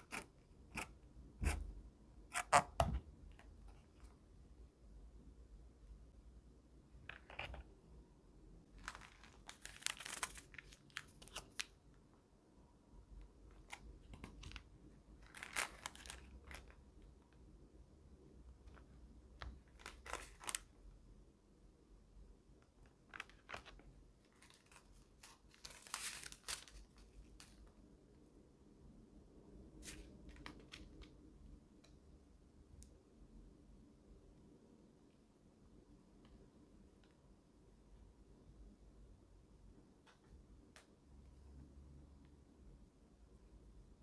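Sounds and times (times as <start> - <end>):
plastic packets crinkling and tearing: 8.7 - 11.8, 15.2 - 16.8, 19.7 - 20.7, 23.1 - 27.6.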